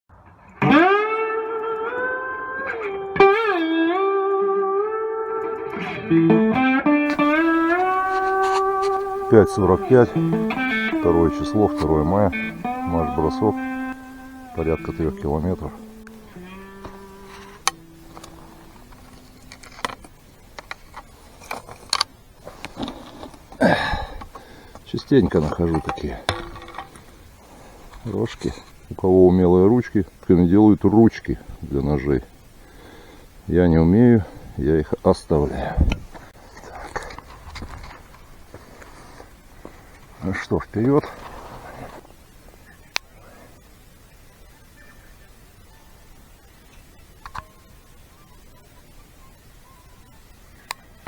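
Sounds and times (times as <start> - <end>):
electric guitar melody: 0.6 - 20.0
metal detector low tones: 7.1 - 31.2
clicks and knocks: 25.2 - 27.2.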